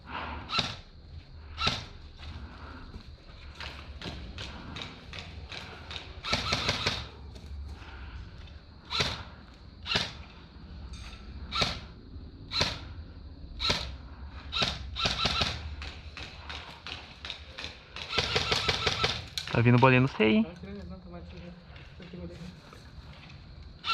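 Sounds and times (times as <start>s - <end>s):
airsoft gun firing: 6.2s - 7.1s, 9.9s - 10.2s, 12.5s - 12.8s, 14.6s - 15.6s, 17.6s - 19.3s.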